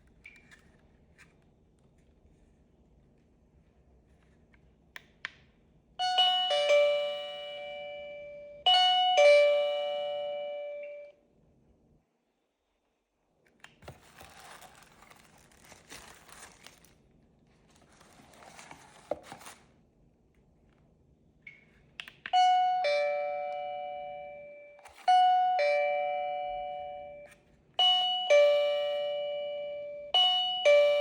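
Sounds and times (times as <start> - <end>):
doorbell ding-dong chime: 6.0 - 11.2, 22.3 - 31.0.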